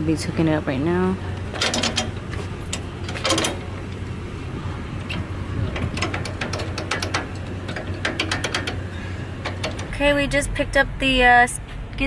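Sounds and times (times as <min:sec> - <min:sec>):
engine humming: 0:00.0 - 0:12.0
metallic clicks and clanks: 0:01.4 - 0:04.2, 0:05.0 - 0:10.6.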